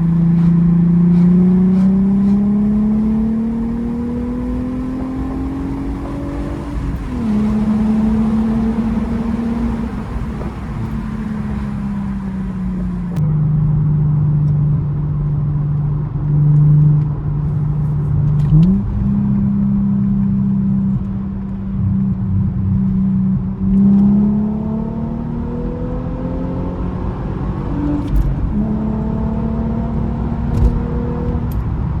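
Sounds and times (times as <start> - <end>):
car engine and exhaust driving: 0.0 - 32.0.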